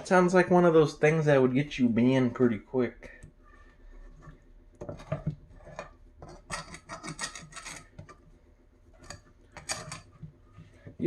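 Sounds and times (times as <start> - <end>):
pan being scrubbed: 3.3 - 11.0.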